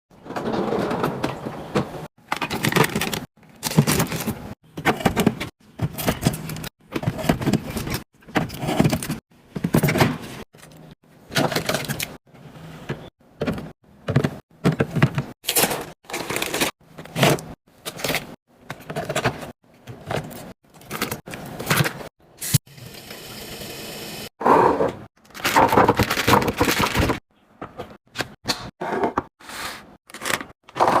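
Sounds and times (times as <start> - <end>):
packaging handled: 25.2 - 27.2.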